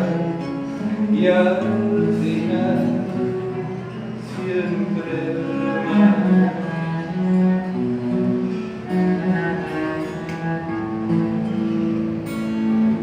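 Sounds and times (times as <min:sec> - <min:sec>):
cello playing slow bowed melody: 0:00.0 - 0:13.0.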